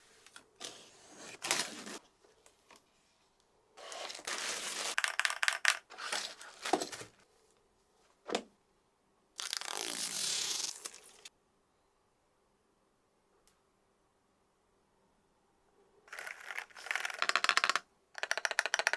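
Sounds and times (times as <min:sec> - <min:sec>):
packaging scraping and rustling: 0:00.6 - 0:02.0, 0:03.8 - 0:05.0, 0:05.9 - 0:07.2.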